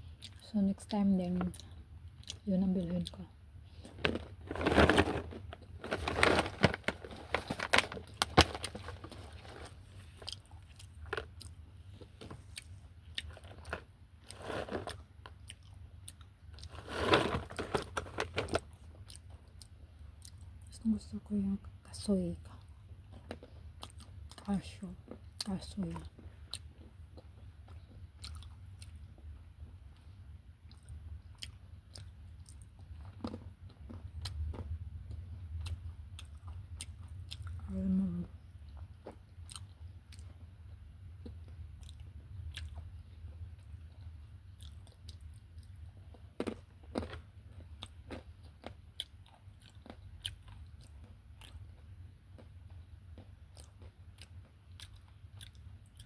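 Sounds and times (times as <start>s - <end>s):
chewing and crunching nuts: 0.0s - 56.0s.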